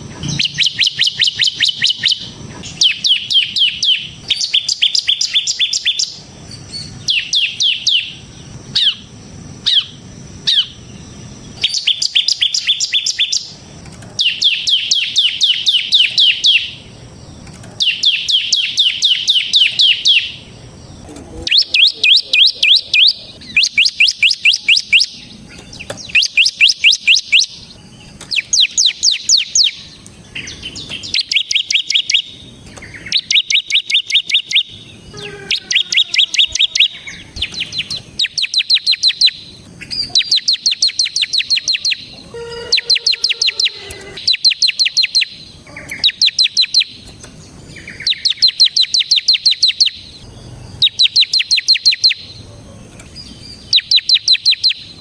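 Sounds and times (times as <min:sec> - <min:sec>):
bird singing sharp high notes: 0:00.2 - 0:13.6, 0:17.8 - 0:20.6, 0:26.0 - 0:47.1.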